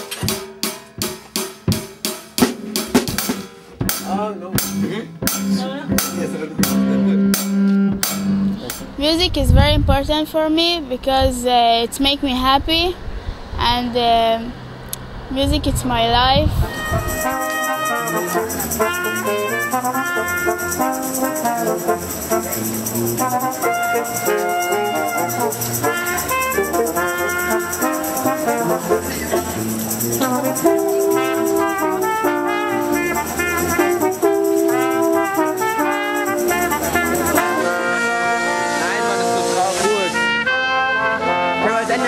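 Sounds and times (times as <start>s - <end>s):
brass instruments playing melody: 5.2s - 9.0s, 16.6s - 42.0s.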